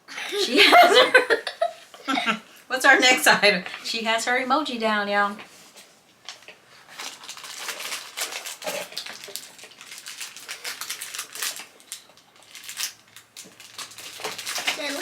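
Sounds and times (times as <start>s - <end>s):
snack packaging crinkling: 6.3s - 15.0s.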